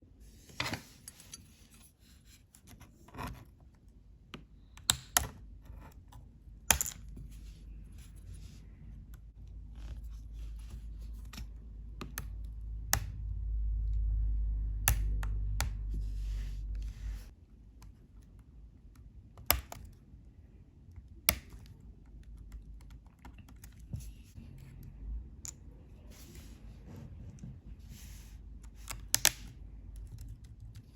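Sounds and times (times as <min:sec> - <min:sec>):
low rumble: 0:09.4 - 0:17.3.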